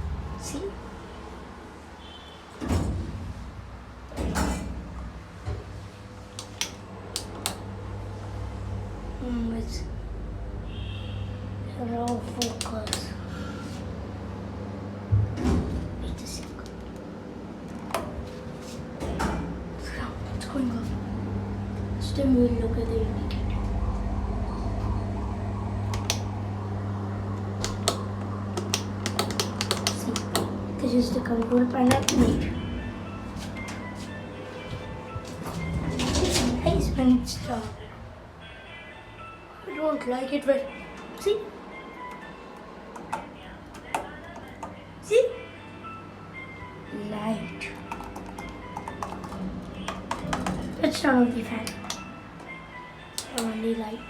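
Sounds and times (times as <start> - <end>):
elevator doors sliding and thudding: 0.0 - 38.4
low steady hum: 0.0 - 54.0
sharp clicks: 28.6 - 30.5.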